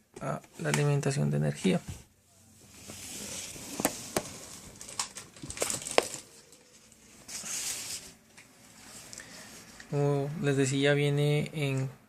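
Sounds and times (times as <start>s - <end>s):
power cord rustling: 2.6s - 8.4s.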